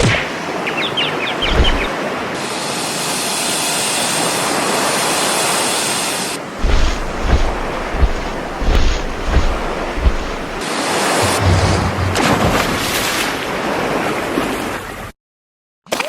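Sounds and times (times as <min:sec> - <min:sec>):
ocean surf: 0:00.2 - 0:14.9
wind on microphone: 0:01.4 - 0:01.9, 0:06.6 - 0:10.6.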